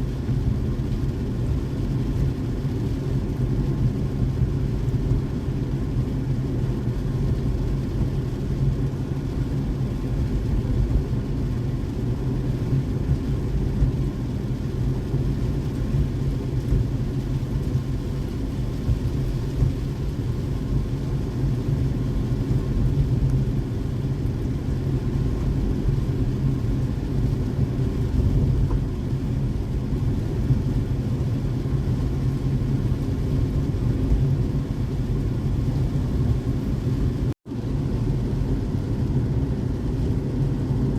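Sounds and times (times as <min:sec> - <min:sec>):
car driving rumble: 0:00.0 - 0:40.9.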